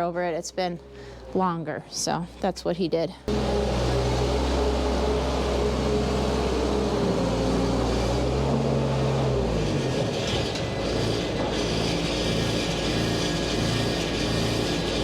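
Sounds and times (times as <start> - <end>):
skid steer engine running: 3.3 - 15.0.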